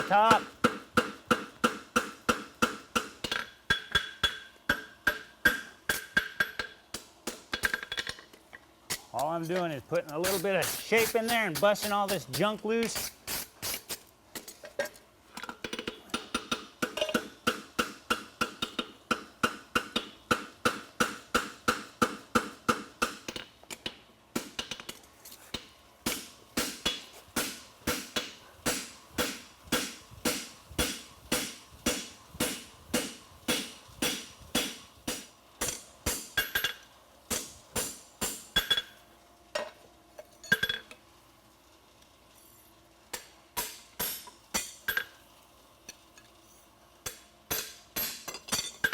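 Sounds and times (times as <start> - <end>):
hammer striking horseshoe on anvil: 0.3 - 8.2, 15.7 - 23.5, 26.1 - 39.0, 43.2 - 45.2, 47.0 - 48.9.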